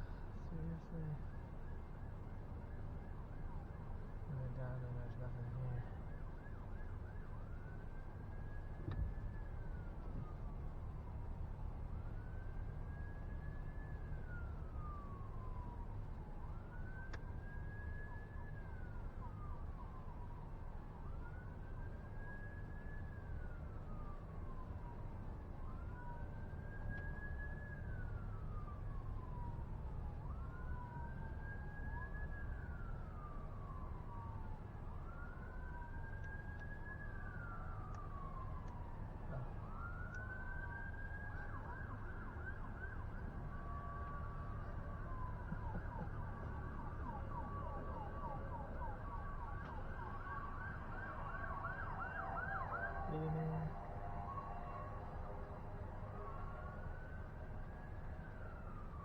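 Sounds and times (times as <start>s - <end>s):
emergency siren wailing and yelping: 11.9s - 59.0s.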